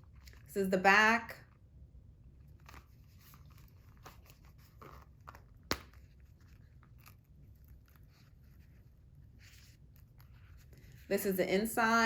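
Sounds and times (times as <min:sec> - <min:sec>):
wallet rustling and clicking: 0:02.5 - 0:11.1.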